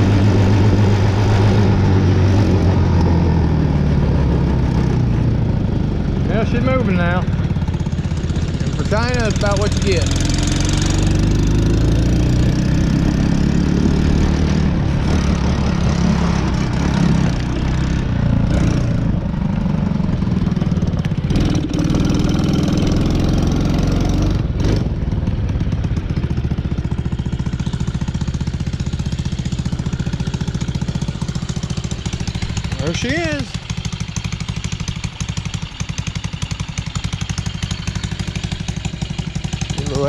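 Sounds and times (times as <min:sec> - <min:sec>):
small atv engine running: 0:00.0 - 0:40.0.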